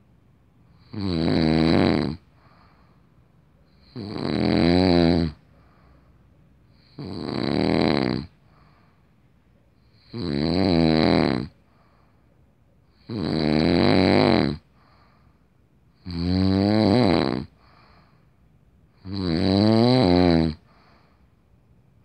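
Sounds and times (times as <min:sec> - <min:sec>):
man snoring: 0:00.7 - 0:02.3, 0:03.8 - 0:05.4, 0:06.8 - 0:08.4, 0:10.0 - 0:11.6, 0:13.0 - 0:14.7, 0:16.0 - 0:17.7, 0:19.0 - 0:20.7.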